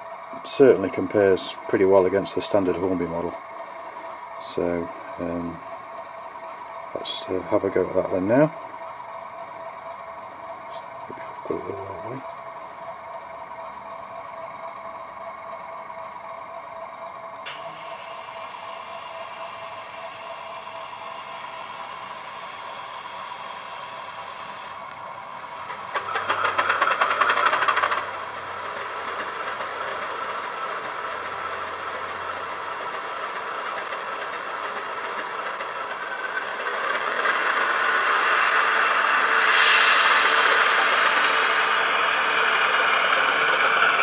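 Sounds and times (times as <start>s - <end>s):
model locomotive diesel engine: 0.0s - 44.0s
loud noise: 36.9s - 44.0s.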